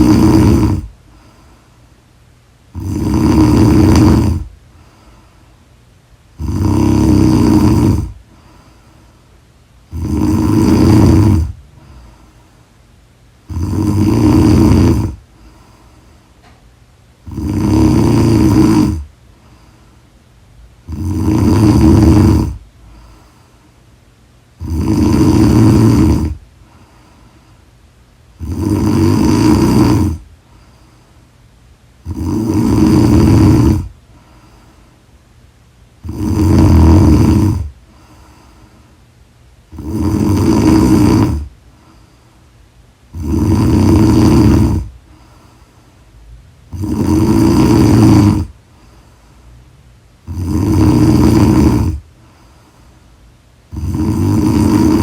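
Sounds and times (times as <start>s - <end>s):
woman snoring: 0.0s - 1.0s, 2.7s - 4.5s, 6.3s - 8.3s, 9.8s - 12.1s, 13.4s - 15.3s, 17.2s - 19.1s, 20.8s - 23.2s, 24.6s - 26.4s, 28.4s - 30.3s, 32.0s - 34.0s, 36.0s - 38.4s, 39.7s - 41.5s, 43.1s - 45.0s, 46.7s - 48.6s, 50.2s - 52.1s, 53.7s - 55.0s
quiet breathing: 0.0s - 55.0s.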